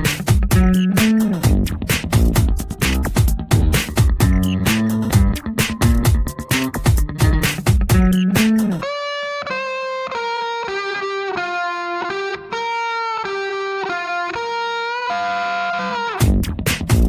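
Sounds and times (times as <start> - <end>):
band with drums: 0.0 - 8.8, 16.2 - 17.0
electric guitar held notes: 3.5 - 16.4.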